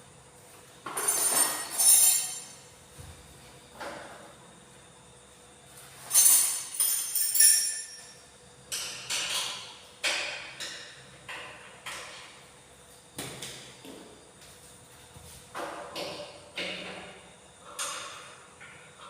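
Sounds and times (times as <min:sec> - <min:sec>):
metallic clinks and knocks: 0:00.8 - 0:02.6, 0:06.1 - 0:08.8.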